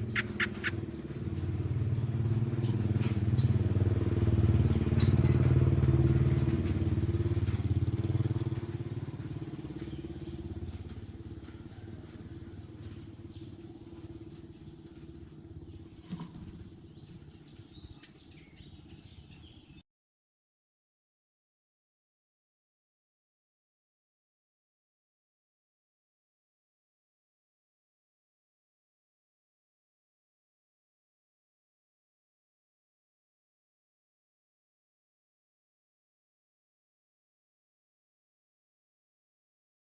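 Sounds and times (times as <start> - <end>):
engine running: 0.0 - 19.8.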